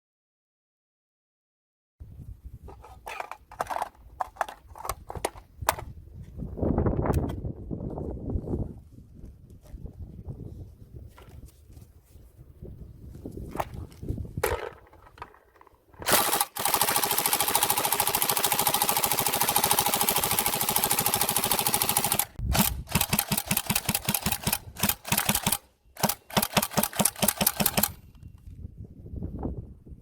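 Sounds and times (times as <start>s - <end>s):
airsoft rifle firing bursts: 16.0s - 28.0s.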